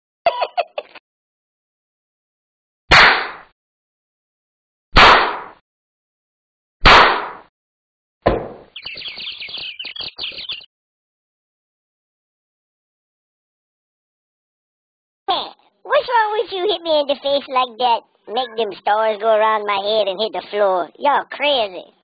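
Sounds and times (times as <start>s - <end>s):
loud sharp hits: 5.0s - 5.6s, 6.8s - 7.5s.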